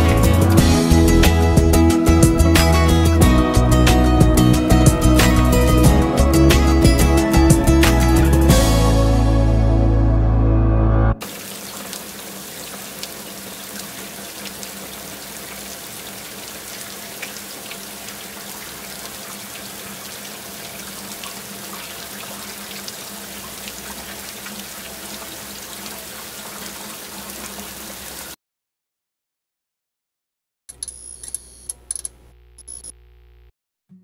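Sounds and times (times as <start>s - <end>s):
running water rushing: 11.2s - 28.4s
water splashes and drips: 11.2s - 28.4s.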